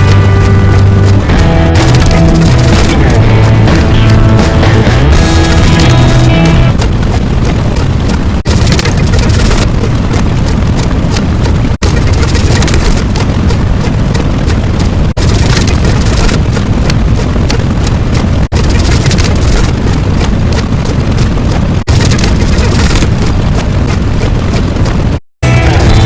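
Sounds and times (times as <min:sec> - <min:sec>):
loud noisy low sound effect: 0:00.0 - 0:06.8.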